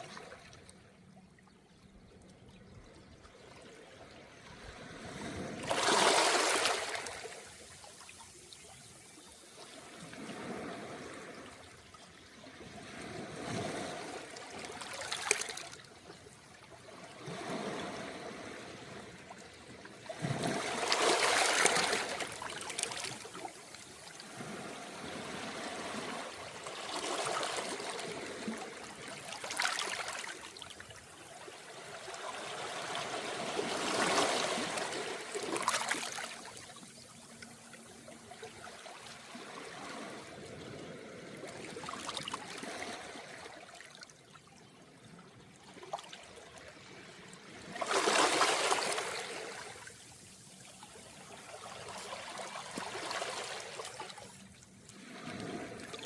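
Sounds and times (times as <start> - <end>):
trickling wash of water: 3.4 - 44.4, 45.6 - 56.0
waves washing onto pebbles: 5.4 - 7.8, 20.2 - 30.4, 47.8 - 56.0.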